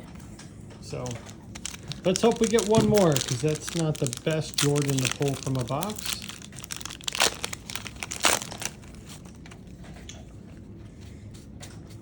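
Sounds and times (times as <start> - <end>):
card pack wrapper crinkling: 0.9 - 9.5
wrapper ripping: 1.0 - 9.4.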